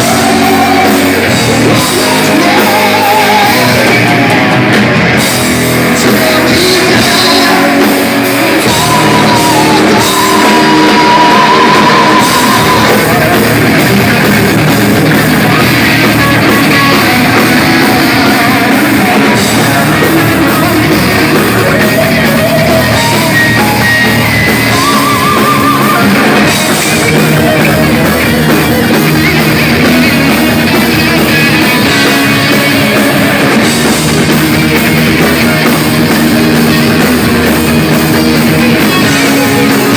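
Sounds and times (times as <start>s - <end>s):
person singing: 0.0s - 5.0s, 5.8s - 13.8s, 15.2s - 29.9s
bass guitar: 0.0s - 39.9s
distorted electric guitars: 0.0s - 39.9s
drums: 0.0s - 39.9s.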